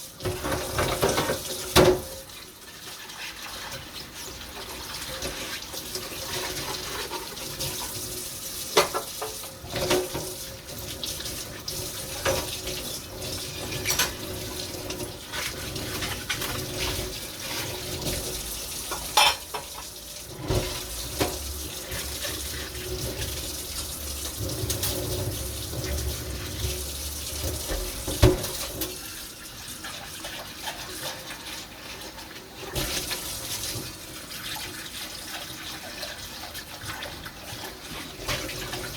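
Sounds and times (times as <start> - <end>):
tap water running into sink: 0.0 - 38.9
dishes clinking: 18.9 - 20.0.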